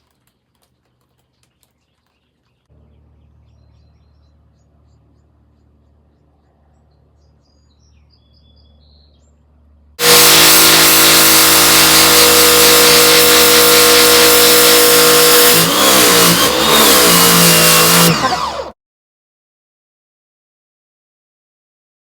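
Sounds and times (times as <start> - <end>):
pressure washer running: 10.0 - 18.8.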